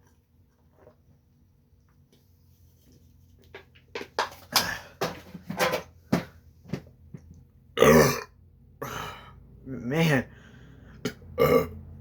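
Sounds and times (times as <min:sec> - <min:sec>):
man burping: 0:07.8 - 0:09.2, 0:11.4 - 0:11.8.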